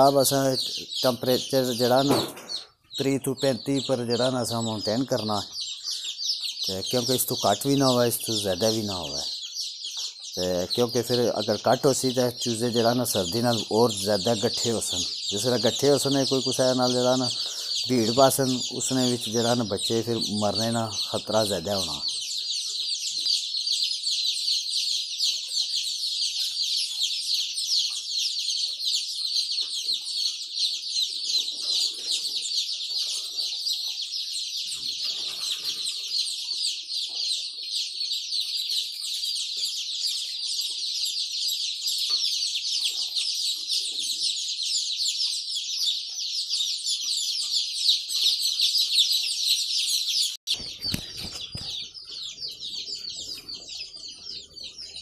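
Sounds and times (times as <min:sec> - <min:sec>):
chicks peeping: 0:00.0 - 0:55.0.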